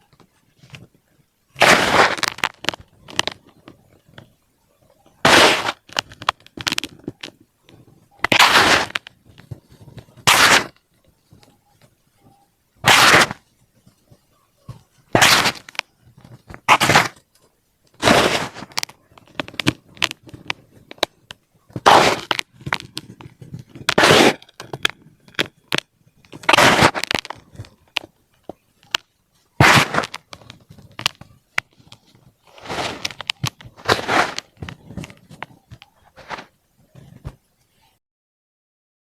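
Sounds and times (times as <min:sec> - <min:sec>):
baking soda crunching: 0:31.9 - 0:35.2.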